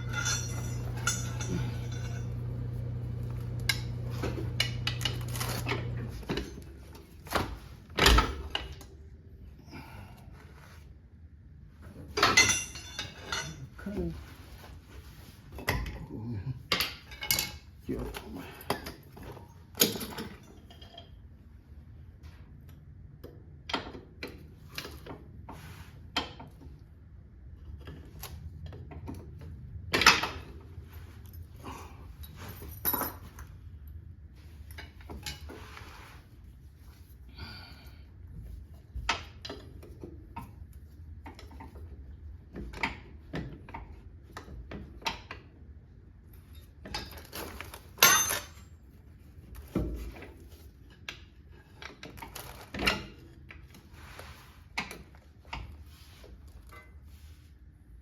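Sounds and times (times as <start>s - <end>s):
metallic clinks of hand tools: 0.0s - 2.4s
low steady hum: 0.0s - 23.8s.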